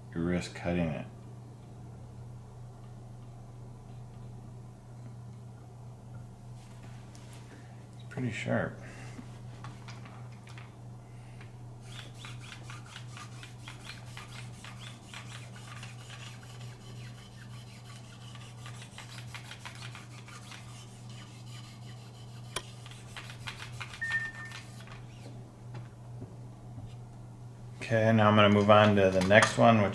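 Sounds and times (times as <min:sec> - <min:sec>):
abrasive scraping on blade: 0:11.8 - 0:25.4.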